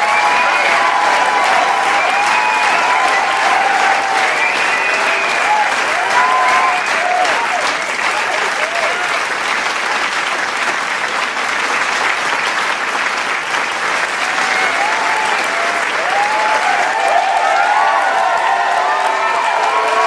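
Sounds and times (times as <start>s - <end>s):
cheers and whoops: 0.0s - 9.2s, 14.2s - 20.0s
crowd applauding: 0.0s - 20.0s.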